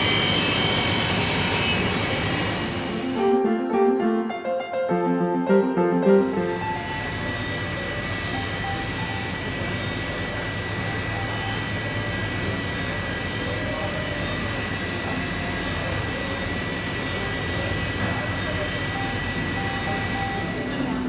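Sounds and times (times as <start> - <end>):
machinery roar: 0.0 - 3.4, 6.0 - 21.0
thin high whine: 0.0 - 3.4.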